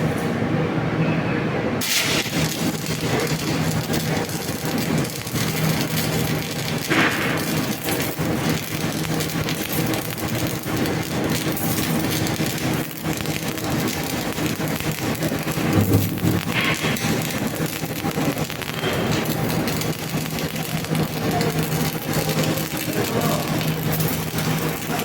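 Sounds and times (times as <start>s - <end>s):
welding arc crackling and sizzling: 1.8s - 25.0s
steady low hum: 15.3s - 18.6s.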